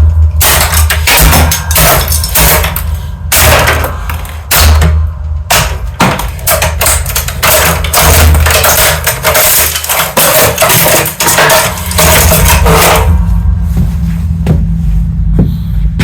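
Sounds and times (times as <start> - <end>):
steady low hum: 0.0 - 16.0
printer cracking under a press: 0.4 - 13.1.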